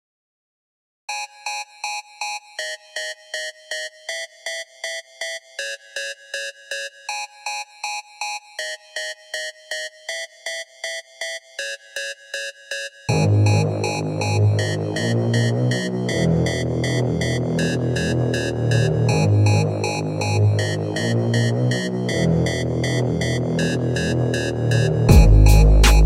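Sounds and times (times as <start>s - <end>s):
synthesizer chord notes: 13.1s - 26.0s
heavy bass beat: 24.6s - 26.0s.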